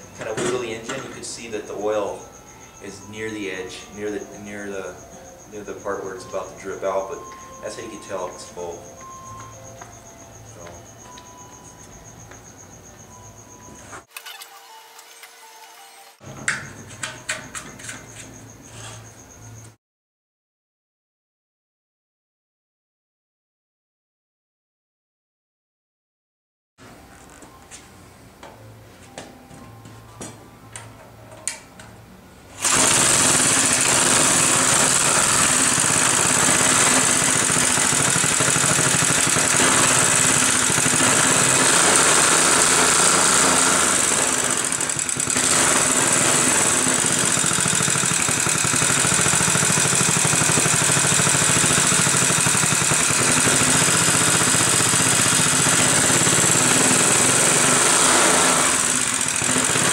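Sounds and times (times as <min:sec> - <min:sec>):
small engine running at fast idle: 0:00.0 - 0:12.2, 0:32.6 - 0:59.9.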